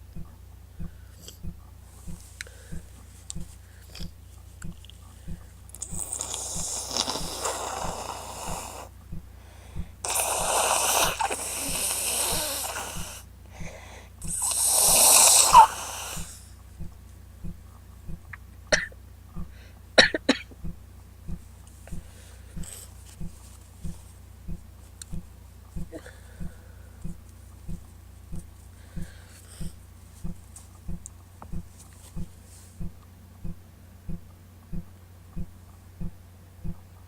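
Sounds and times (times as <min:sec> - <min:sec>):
woman blowing nose: 0:05.9 - 0:08.9, 0:10.0 - 0:13.2, 0:14.2 - 0:16.4.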